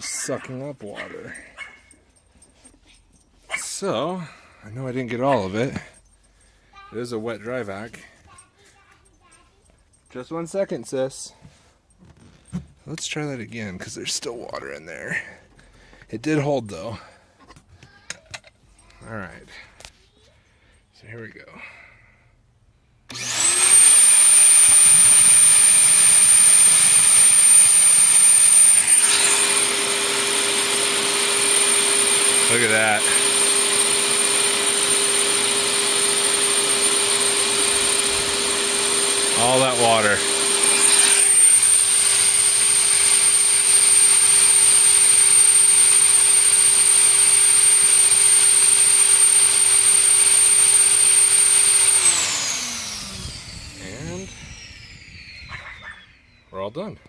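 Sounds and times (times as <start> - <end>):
shop vacuum motor whining: 23.1 - 56.9.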